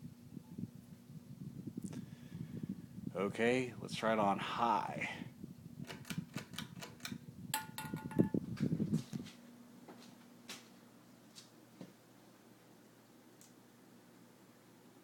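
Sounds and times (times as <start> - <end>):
fan motor humming: 0.0 - 15.0
fan switch clicks: 5.8 - 8.4.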